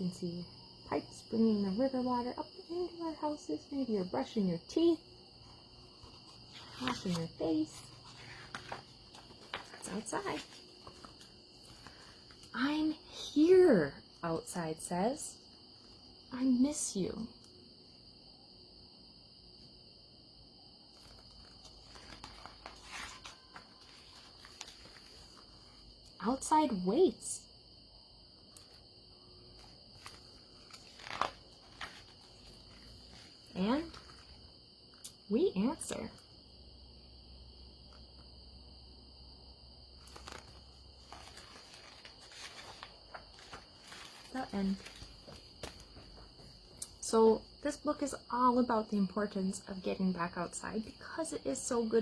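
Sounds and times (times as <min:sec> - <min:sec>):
paper rustling: 0:04.8 - 0:12.6, 0:20.9 - 0:26.5, 0:28.5 - 0:28.8, 0:29.4 - 0:35.1, 0:40.0 - 0:46.8.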